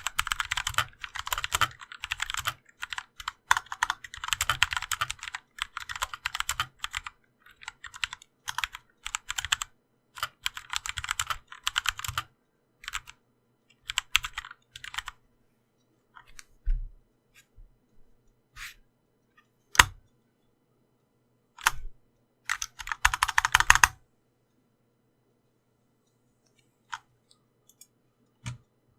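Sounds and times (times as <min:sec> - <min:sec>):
mechanical keyboard typing: 0:00.0 - 0:13.2, 0:13.8 - 0:15.2, 0:19.8 - 0:20.0, 0:21.6 - 0:21.8, 0:22.5 - 0:24.0.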